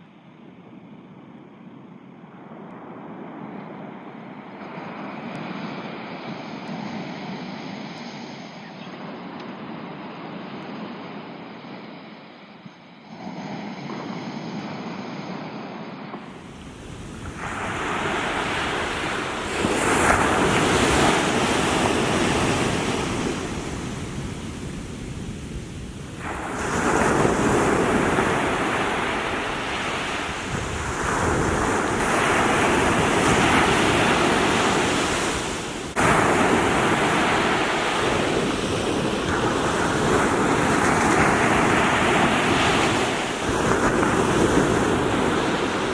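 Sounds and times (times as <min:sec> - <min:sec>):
wind on microphone: 0:00.0 - 0:45.9
small waves washing onto shore: 0:16.2 - 0:45.9.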